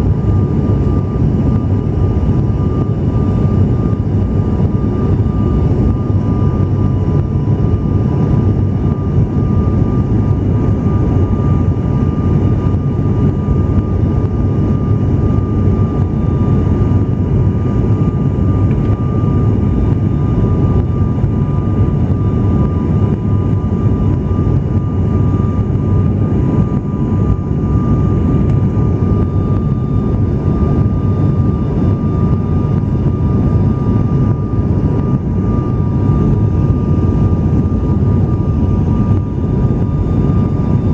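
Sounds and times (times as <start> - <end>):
engine and propeller drone: 0.0 - 40.9
thin steady whine: 0.0 - 40.9.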